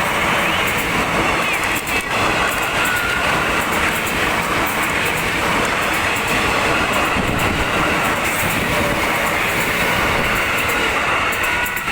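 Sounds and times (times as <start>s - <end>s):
electric train running past: 0.0s - 11.9s
wheels clicking over rail switch: 1.4s - 11.9s.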